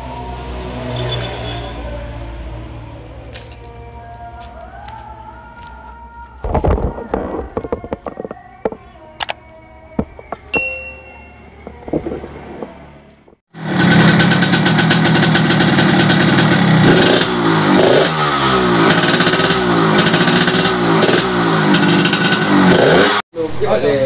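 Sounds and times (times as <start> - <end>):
clicks: 6.8 - 10.5
short ringing tone: 10.5 - 11.6
motorcycle engine revving: 11.8 - 24.0.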